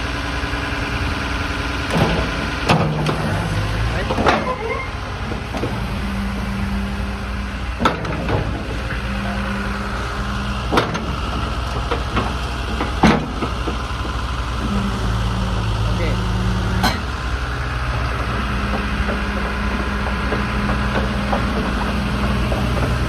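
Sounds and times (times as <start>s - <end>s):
excavator diesel engine: 0.0s - 23.0s
sharp metallic knocks: 16.7s - 17.1s, 18.0s - 23.0s.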